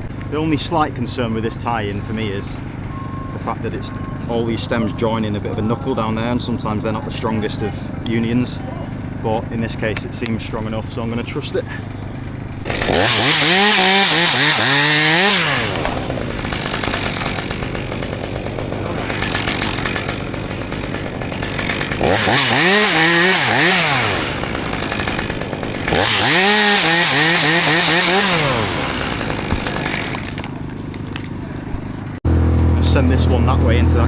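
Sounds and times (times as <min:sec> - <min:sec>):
chainsaw revving: 0:02.1 - 0:32.2.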